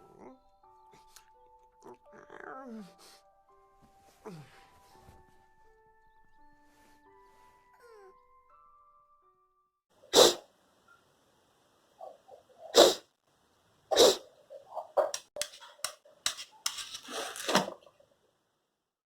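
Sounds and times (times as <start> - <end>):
loud sneezes: 10.1 - 10.5, 12.7 - 13.1, 13.9 - 14.3
sniffs and snorts: 10.1 - 10.5, 12.0 - 13.1, 13.9 - 15.8.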